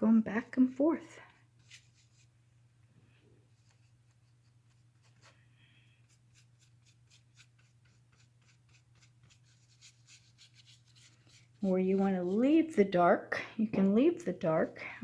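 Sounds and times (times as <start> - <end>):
paintbrush scratching on canvas: 0.1 - 2.4, 3.5 - 12.8.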